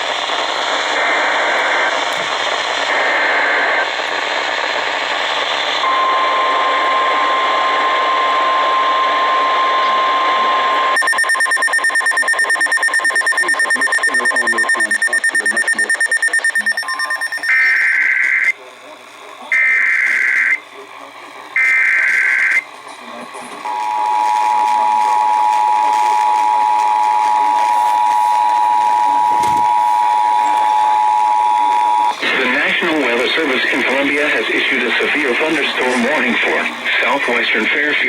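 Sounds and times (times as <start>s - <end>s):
radio static: 0.0s - 38.0s
warbling data bursts: 11.0s - 18.0s
steady warning alarm tone: 11.0s - 18.5s
rapid alarm beeping: 11.0s - 18.6s.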